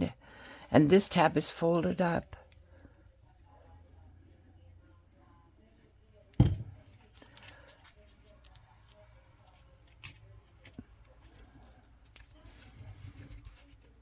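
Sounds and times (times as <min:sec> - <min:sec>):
card knocking on table: 0:06.4 - 0:06.8
light taps on table: 0:06.4 - 0:06.8
paper rustling: 0:06.9 - 0:14.0.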